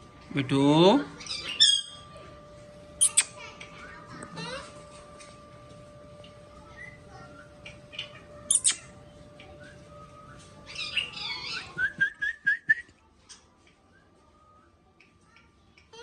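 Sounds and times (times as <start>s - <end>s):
parrot whistling notes: 3.0s - 3.3s
parrot chattering: 3.0s - 3.5s, 7.9s - 8.9s
parrot shrieking: 10.7s - 11.7s.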